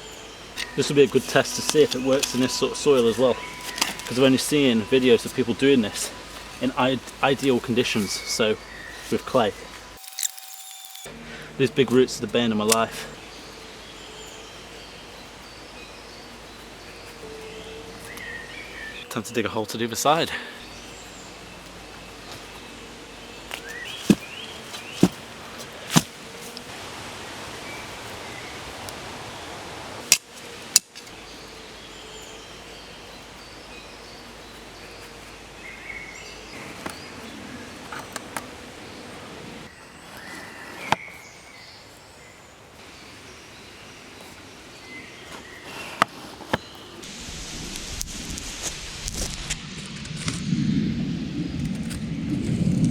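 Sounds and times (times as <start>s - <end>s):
wind in trees: 0.0s - 10.0s, 11.0s - 52.9s
tool knocking into soil: 25.9s - 26.2s.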